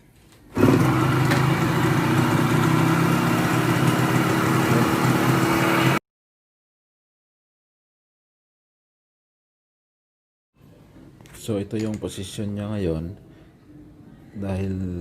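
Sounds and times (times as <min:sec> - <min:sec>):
two-stroke engine idling: 0:00.6 - 0:05.5.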